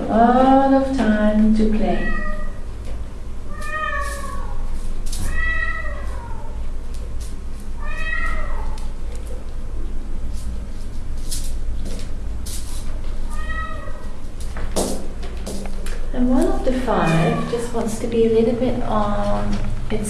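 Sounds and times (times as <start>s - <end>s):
kittens meowing: 3.5s - 6.6s, 7.8s - 8.9s, 13.3s - 14.2s, 16.9s - 17.8s.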